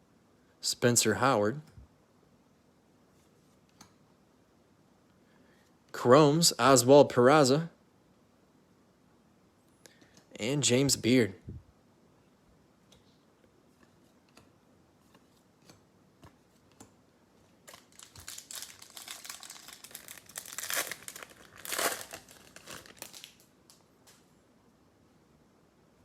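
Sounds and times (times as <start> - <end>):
wrapper tearing and crinkling: 17.6 - 23.5.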